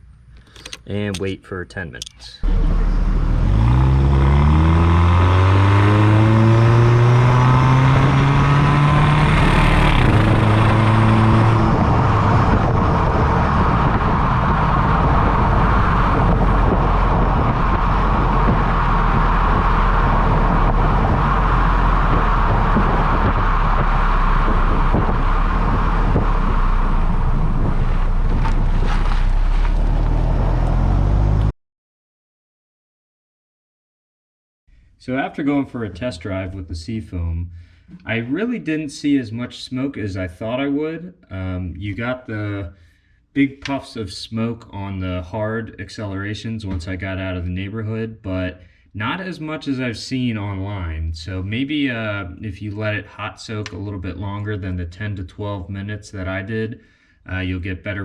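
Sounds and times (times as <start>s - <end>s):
road noise: 0.4s - 31.5s
transmission shifting up: 2.0s - 31.5s
car engine accelerating: 2.4s - 31.5s.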